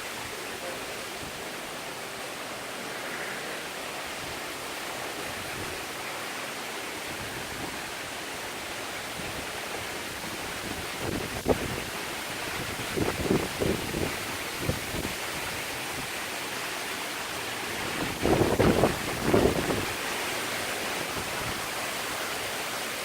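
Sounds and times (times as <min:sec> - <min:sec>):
driving rain: 0:00.0 - 0:23.0
hurricane wind rushing: 0:00.0 - 0:23.0.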